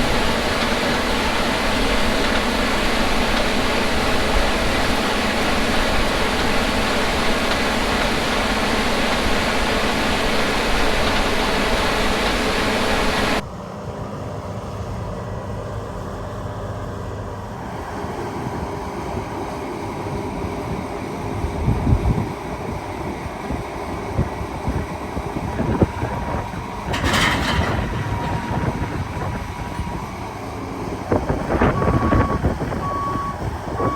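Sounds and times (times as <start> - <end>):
heavy harvest machinery running: 0.0 - 16.2, 16.8 - 33.9
quieter steady machine noise: 0.0 - 21.5
low bumps: 25.6 - 33.9.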